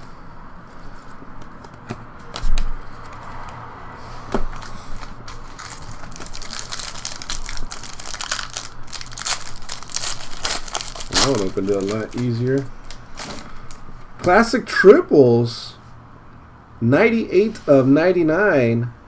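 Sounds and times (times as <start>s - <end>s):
wrapper crinkling and tearing: 4.6s - 13.9s.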